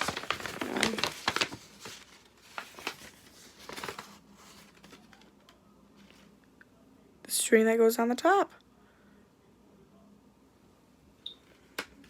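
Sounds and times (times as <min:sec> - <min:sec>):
packaging crinkling and rustling: 0:00.0 - 0:06.3.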